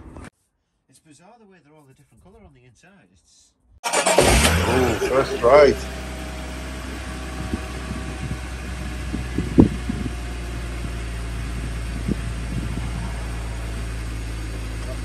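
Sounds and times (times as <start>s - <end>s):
car engine running: 3.9s - 15.0s.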